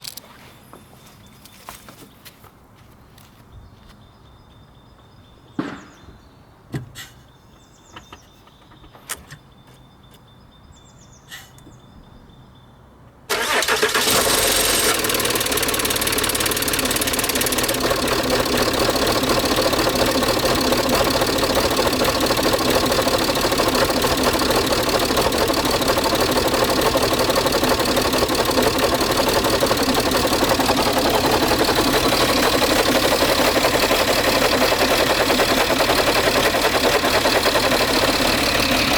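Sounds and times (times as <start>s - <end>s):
diesel engine starting and idling: 13.3s - 38.9s.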